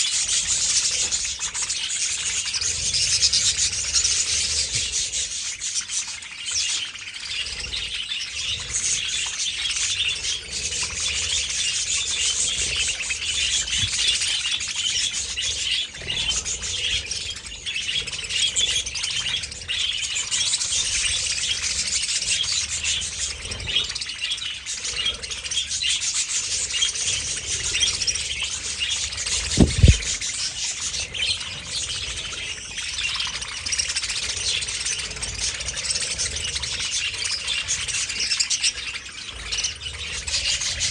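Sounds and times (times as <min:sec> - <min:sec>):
budgerigars chattering and chirping: 0:00.0 - 0:40.9
low thump: 0:29.5 - 0:30.2.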